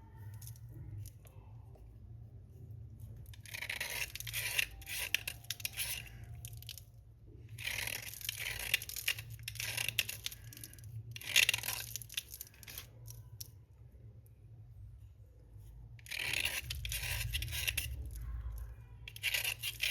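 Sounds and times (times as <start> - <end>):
slate pencil crunching: 3.4 - 6.8, 7.5 - 10.6, 11.2 - 13.0, 16.0 - 18.4, 19.1 - 19.9.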